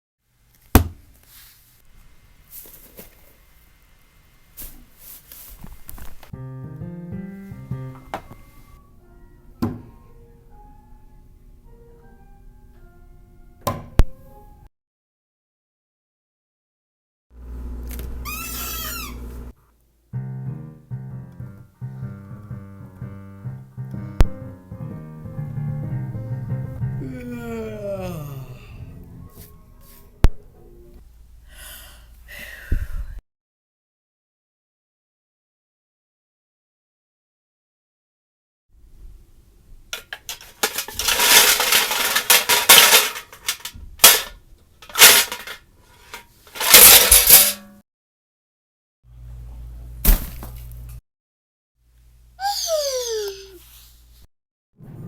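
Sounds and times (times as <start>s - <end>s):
keyboard music: 6.3s - 13.6s, 20.2s - 31.0s
squeaky warble: 18.2s - 19.2s
hard objects clattering together: 40.0s - 47.7s.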